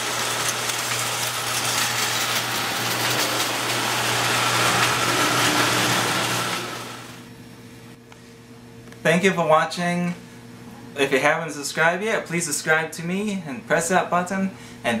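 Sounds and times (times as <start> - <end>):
toy train wheels clattering: 0.0 - 7.1
electric motor hum: 0.0 - 8.0.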